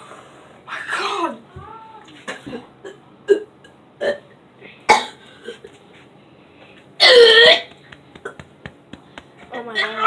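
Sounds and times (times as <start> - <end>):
boy gagging and retching: 7.0 - 7.7.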